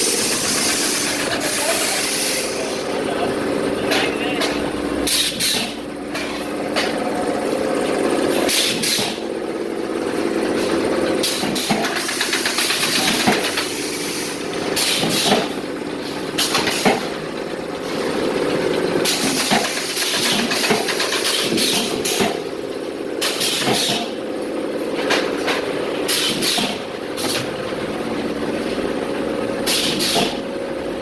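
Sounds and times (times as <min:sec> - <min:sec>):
welding machine hum: 0:00.0 - 0:31.0
short pneumatic hiss: 0:05.1 - 0:05.7, 0:08.5 - 0:09.2, 0:26.1 - 0:27.3, 0:29.7 - 0:30.3.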